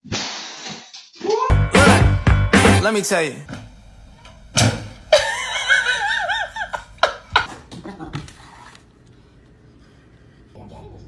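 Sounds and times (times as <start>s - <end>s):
person giggling: 5.1s - 7.5s.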